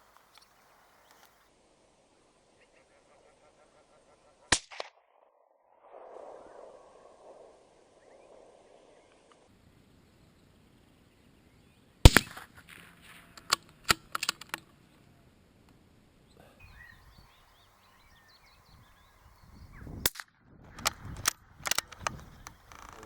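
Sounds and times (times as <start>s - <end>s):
rifle shot: 4.5s - 9.5s, 12.0s - 12.9s
rifle clicks: 13.4s - 14.6s, 20.0s - 23.0s.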